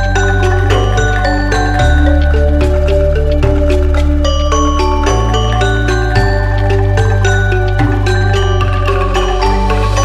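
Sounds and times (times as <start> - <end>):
mallet melody: 0.0 - 10.0
sustained bass: 0.0 - 10.0.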